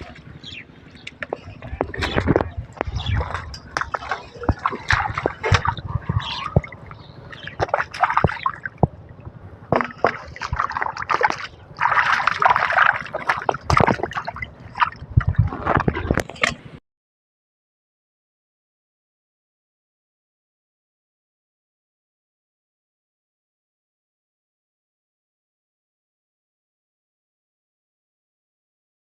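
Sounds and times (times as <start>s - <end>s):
water splashing and sloshing: 0.0s - 16.8s
sharp clicks and knocks: 15.2s - 16.7s.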